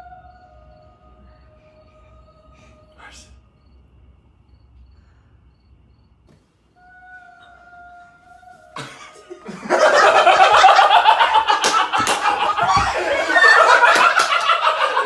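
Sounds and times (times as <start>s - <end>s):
group of people laughing: 8.8s - 15.0s
sharp smacks or claps: 11.6s - 12.6s.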